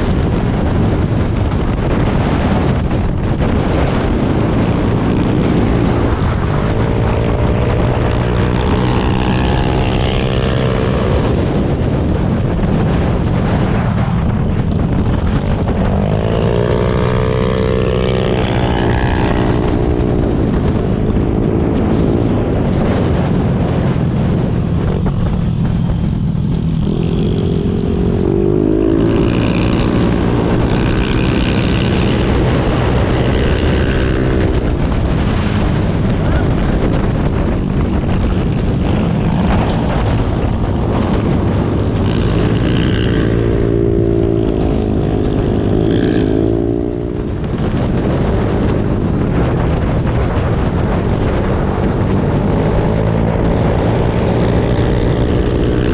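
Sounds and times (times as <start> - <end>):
motorcycle engine running: 0.0 - 55.9
wind noise: 0.0 - 55.9.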